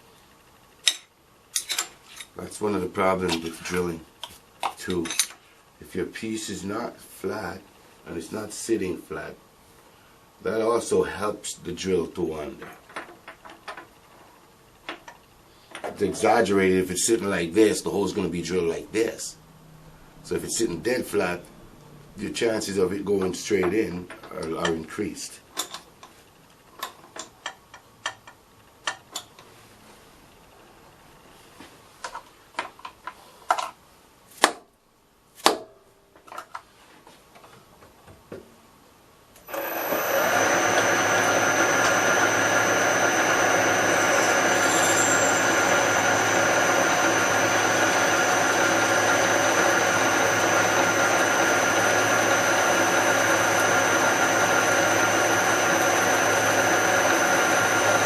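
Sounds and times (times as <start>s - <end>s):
machine spindle motor whining: 39.5s - 58.0s.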